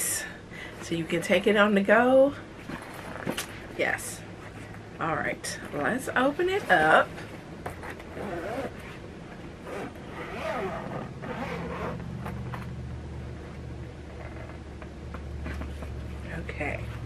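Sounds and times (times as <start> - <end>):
zipper rasping open: 7.7 - 9.0, 9.6 - 12.7, 14.1 - 14.6.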